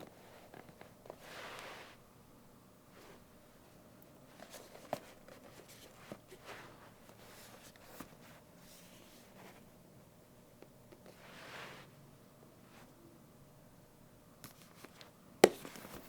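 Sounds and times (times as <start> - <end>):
soft rustles: 4.3 - 9.8.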